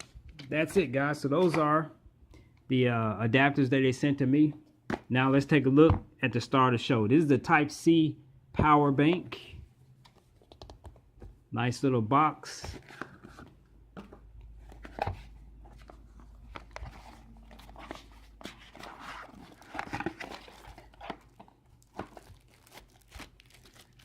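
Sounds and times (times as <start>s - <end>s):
packaging taps and crinkles: 19.4s - 24.0s.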